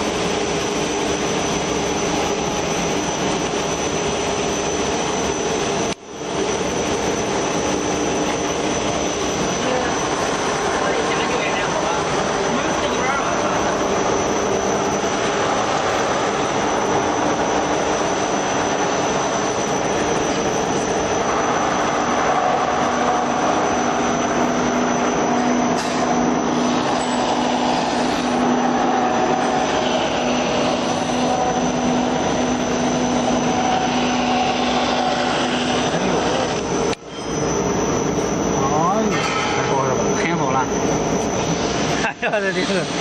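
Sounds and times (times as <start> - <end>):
sanding machine whirring: 26.2 - 36.9.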